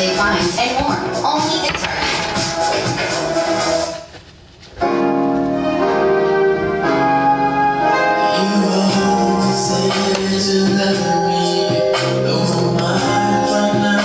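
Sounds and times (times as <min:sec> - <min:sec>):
bass line and beat: 0:00.0 - 0:04.0, 0:08.7 - 0:14.0
held chords: 0:04.8 - 0:14.0.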